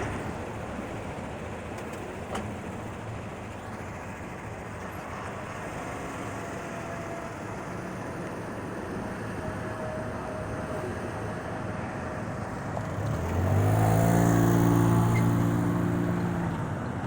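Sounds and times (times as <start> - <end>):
freight train rumbling past: 0.0 - 7.8.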